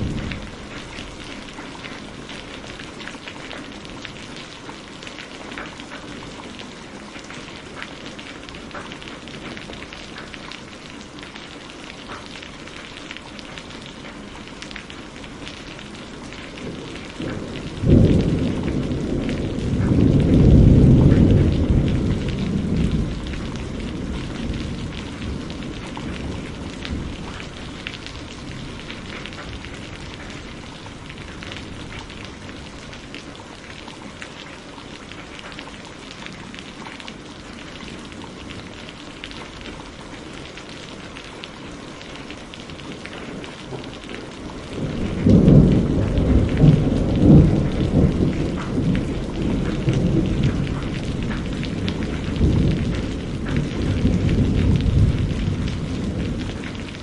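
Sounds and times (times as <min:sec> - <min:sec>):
thunderclap with deep rumble: 0:00.0 - 0:02.9, 0:16.2 - 0:33.7, 0:42.8 - 0:57.0
steady rain: 0:00.0 - 0:57.0.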